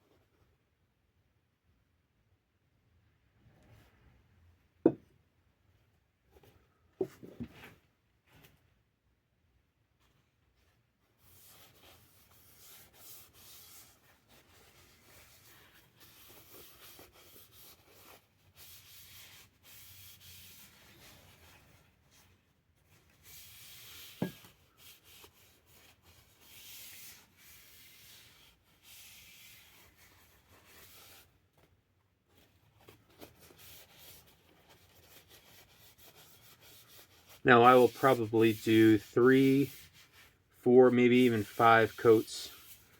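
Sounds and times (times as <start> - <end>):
rag rubbing wood: 36.8 - 40.1.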